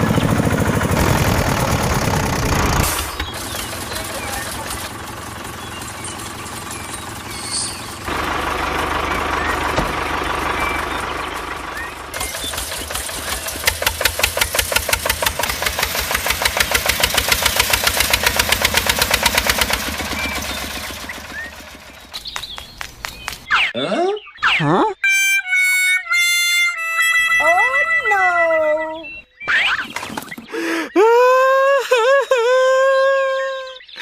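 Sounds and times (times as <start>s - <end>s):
small engine knocking: 0.0s - 23.5s.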